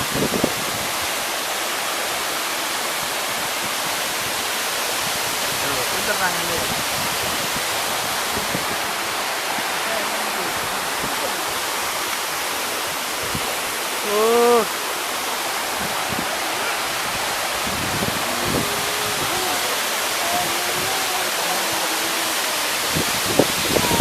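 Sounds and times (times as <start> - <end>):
waterfall rushing: 0.0 - 24.0
person calling out: 14.0 - 14.8, 18.2 - 22.8, 23.7 - 24.0
faint voices: 18.1 - 22.8.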